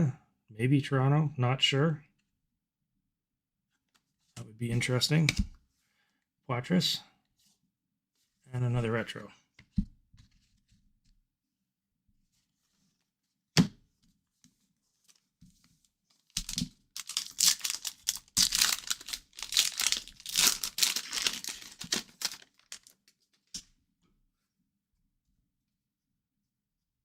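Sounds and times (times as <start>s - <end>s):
wrapper tearing and crinkling: 16.4s - 23.0s.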